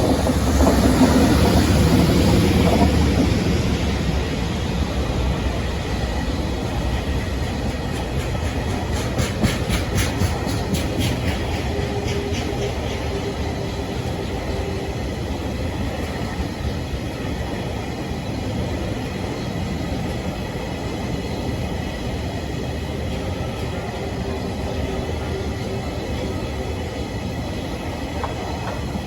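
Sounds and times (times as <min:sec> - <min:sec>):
freight train rumbling on rails: 0:00.0 - 0:29.0
wheel clacks over rail joints: 0:06.6 - 0:14.8.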